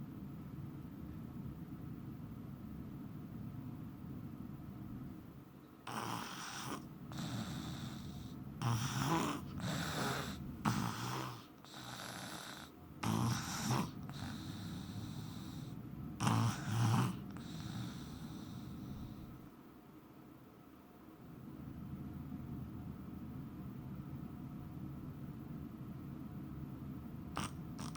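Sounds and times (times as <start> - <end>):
man snoring: 5.9 - 19.3, 27.4 - 27.9.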